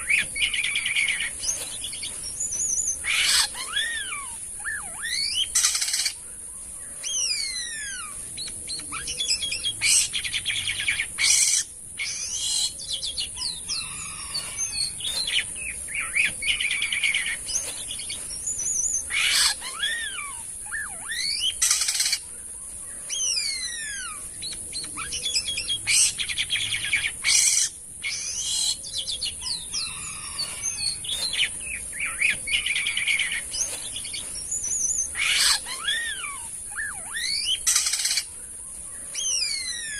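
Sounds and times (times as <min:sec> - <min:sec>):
starling singing: 0:00.0 - 0:06.1, 0:24.9 - 0:38.3
steady high hiss: 0:00.0 - 0:39.9.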